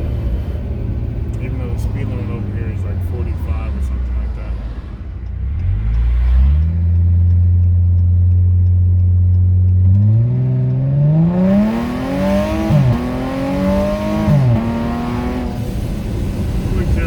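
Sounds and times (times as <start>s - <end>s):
supercharged car engine accelerating: 1.3s - 8.3s, 9.6s - 17.0s.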